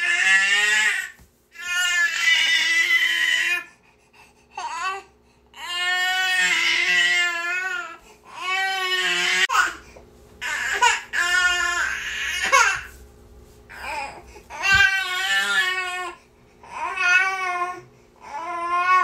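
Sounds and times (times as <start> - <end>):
baby crying: 4.6 - 9.8, 10.4 - 12.9, 13.7 - 19.0.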